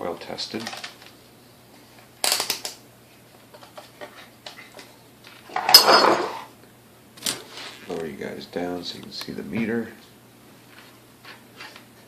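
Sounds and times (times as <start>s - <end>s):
tools clattering on workbench: 5.5s - 6.5s.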